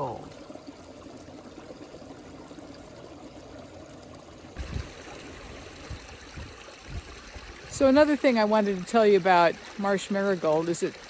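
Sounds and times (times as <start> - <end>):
stream trickling: 0.0 - 11.0
low bump on microphone: 4.6 - 5.0.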